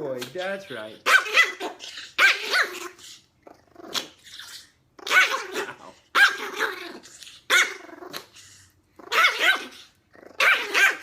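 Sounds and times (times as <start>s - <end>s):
dog growling: 0.4s - 11.0s
small dog barking: 1.0s - 3.0s, 5.0s - 6.8s, 9.1s - 11.0s.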